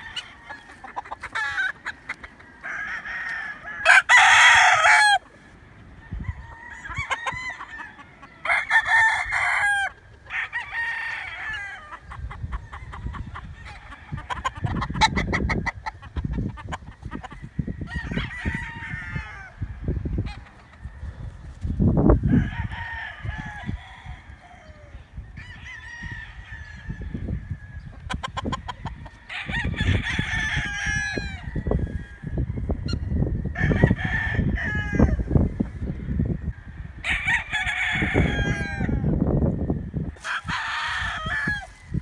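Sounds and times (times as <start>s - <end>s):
chickens clucking: 0.0s - 3.9s, 4.8s - 10.4s, 11.4s - 22.4s, 26.6s - 33.8s
roosters crowing: 0.0s - 42.0s.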